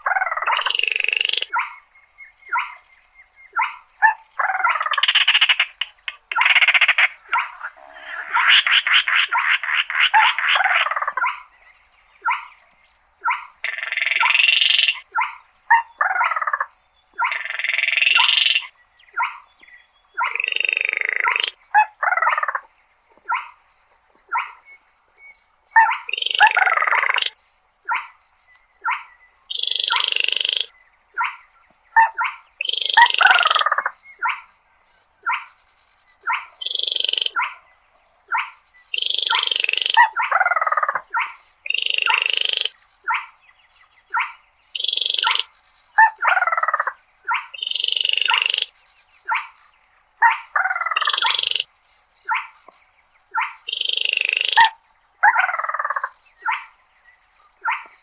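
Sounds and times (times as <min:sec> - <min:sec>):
bird frog-like buzzy calls: 0:00.0 - 0:43.4, 0:44.0 - 0:56.8, 0:57.5 - 0:58.0
bird rattling call: 0:25.9 - 0:27.4, 0:29.5 - 0:30.7, 0:36.2 - 0:37.5, 0:38.4 - 0:42.8, 0:44.8 - 0:45.5, 0:46.2 - 0:49.7, 0:50.6 - 0:51.7.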